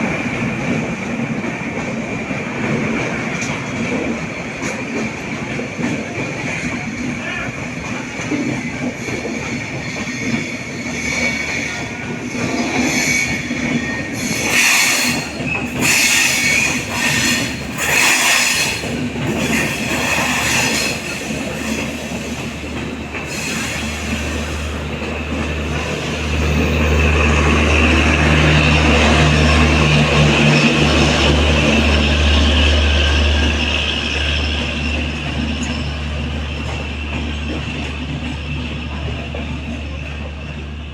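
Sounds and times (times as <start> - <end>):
train wheels clattering over rails: 0.0 - 40.9
high metallic squeal: 12.5 - 18.8.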